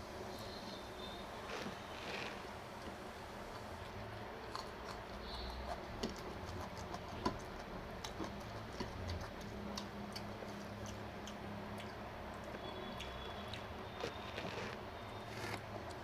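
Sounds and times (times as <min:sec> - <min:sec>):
low background hum: 0:00.0 - 0:16.0
person chewing: 0:03.6 - 0:16.0
mouth clicks and smacks: 0:04.5 - 0:16.0.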